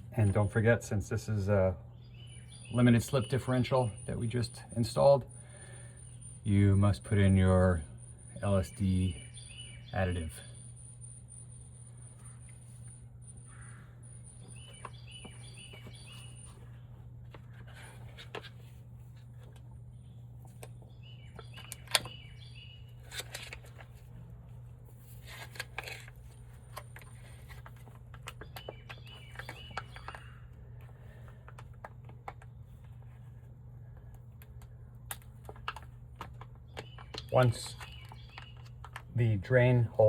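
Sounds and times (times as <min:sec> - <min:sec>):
steady low hum: 0:00.0 - 0:40.0
faint bird chirps: 0:01.8 - 0:18.0, 0:19.9 - 0:23.1, 0:28.3 - 0:31.4, 0:36.7 - 0:40.0
small clicks and knocks: 0:20.4 - 0:22.2, 0:25.2 - 0:33.1, 0:33.9 - 0:39.2.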